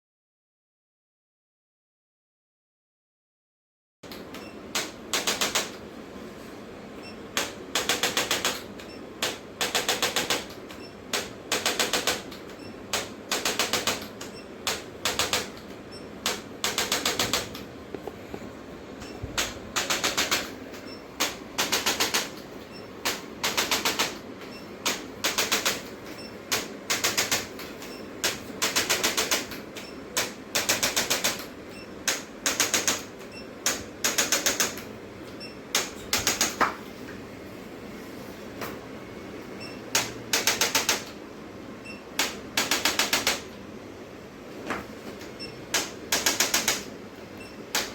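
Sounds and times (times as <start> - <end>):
rapid mechanical clicking: 4.1 - 5.8, 7.3 - 17.7, 19.4 - 20.6, 21.2 - 34.9, 35.7 - 36.6, 39.9 - 41.2, 42.2 - 43.6, 45.7 - 47.9.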